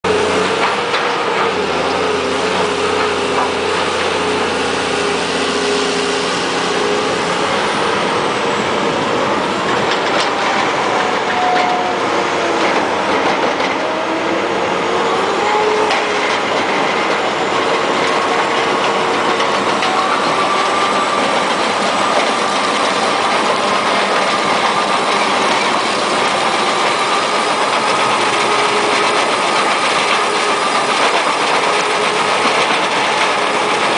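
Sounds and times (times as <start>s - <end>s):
machine engine and hydraulics drone: 0.0s - 33.9s
whining tones: 0.1s - 33.9s
crusher bucket rattling and grinding: 9.6s - 33.9s.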